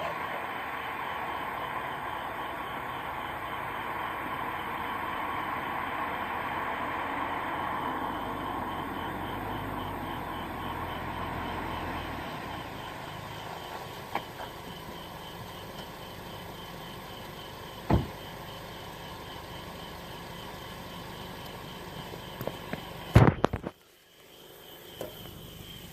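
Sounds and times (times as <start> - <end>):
car cabin noise: 12.0 - 23.9
loud knocks: 17.9 - 18.2.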